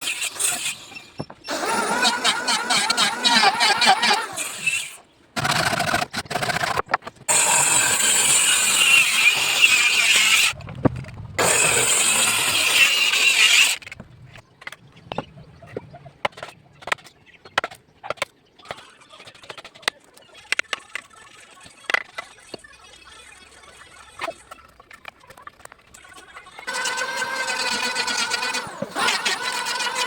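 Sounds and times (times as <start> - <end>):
power tool cutting wood: 0.0 - 5.9, 7.3 - 10.6, 11.4 - 13.8, 26.7 - 30.0.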